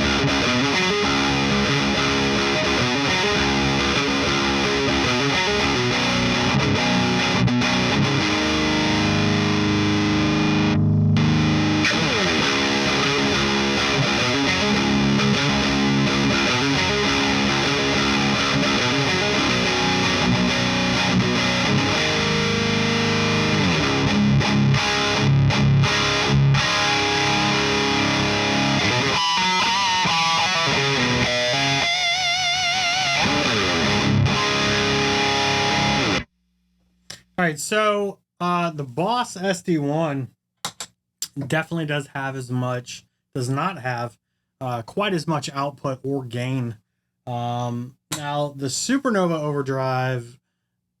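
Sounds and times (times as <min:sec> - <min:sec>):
distorted electric guitar riffs: 0:00.0 - 0:36.3.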